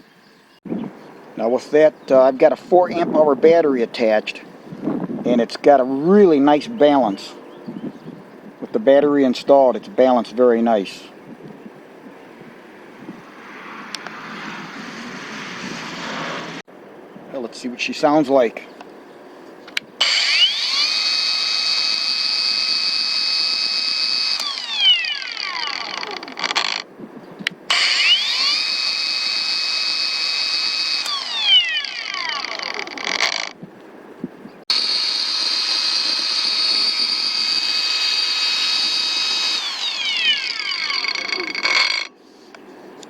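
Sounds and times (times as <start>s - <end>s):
angle grinder whining: 20.0s - 26.8s, 27.7s - 33.6s, 34.7s - 42.2s.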